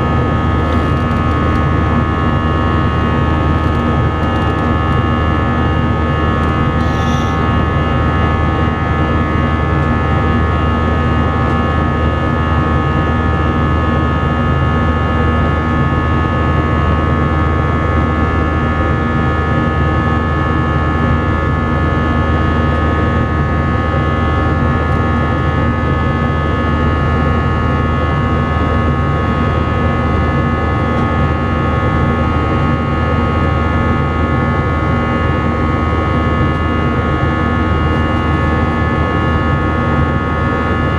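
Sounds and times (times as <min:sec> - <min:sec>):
whining engine tones: 0:00.0 - 0:08.8
jet cabin rumble and airflow roar: 0:00.0 - 0:13.5, 0:27.4 - 0:40.9.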